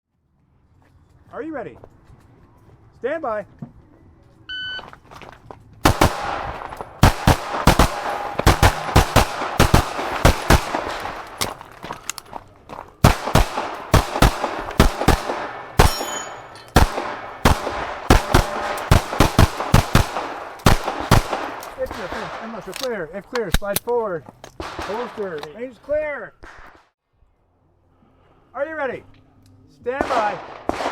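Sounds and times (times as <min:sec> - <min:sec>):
electronic timer beep: 0:04.5 - 0:04.9
pistol firing rapid shots: 0:05.8 - 0:11.4, 0:13.0 - 0:22.6, 0:30.0 - 0:30.9.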